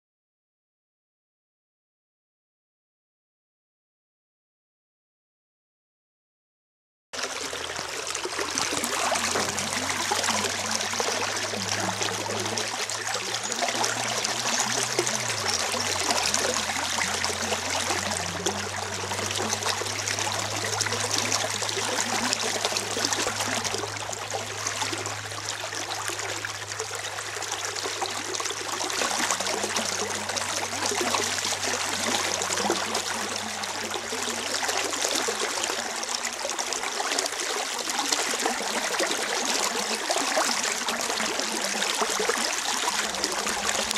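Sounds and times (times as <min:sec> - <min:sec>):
stream water rushing: 0:07.2 - 0:43.9
low steady hum: 0:07.3 - 0:37.1.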